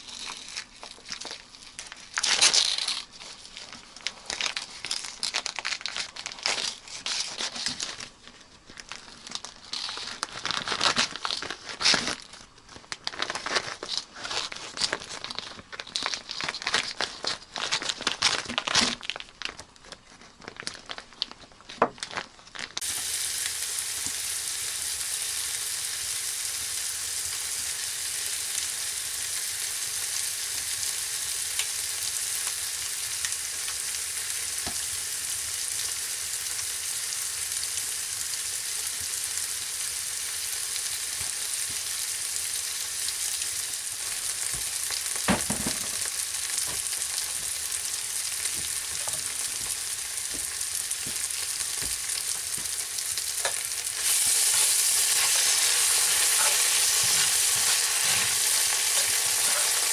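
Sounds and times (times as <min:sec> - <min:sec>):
food frying sizzle: 0:00.0 - 0:08.0, 0:22.1 - 0:59.9
crinkling and crunching handling: 0:00.0 - 0:22.9, 0:43.8 - 0:59.9.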